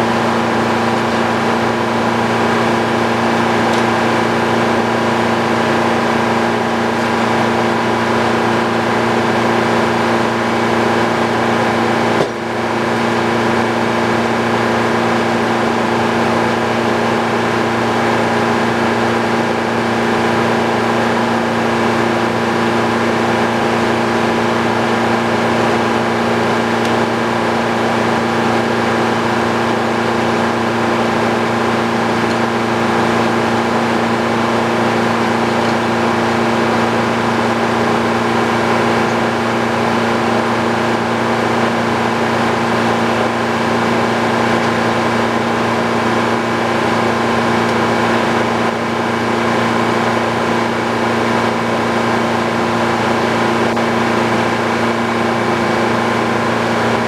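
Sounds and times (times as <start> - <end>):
sawmill engine and saw humming: 0.0 - 57.0.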